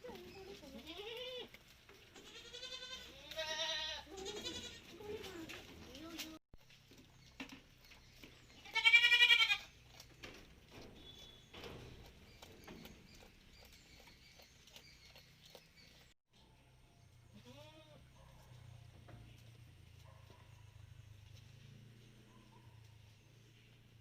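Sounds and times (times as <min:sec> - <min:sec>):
goats bleating: 0:00.6 - 0:01.5, 0:02.2 - 0:05.3, 0:08.6 - 0:09.8, 0:17.4 - 0:18.0.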